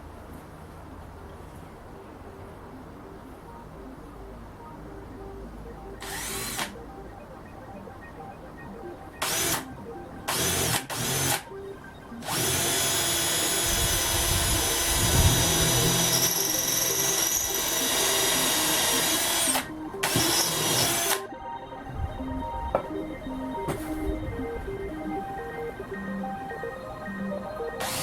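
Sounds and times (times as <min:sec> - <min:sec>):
small power tool motor: 0:12.2 - 0:21.2.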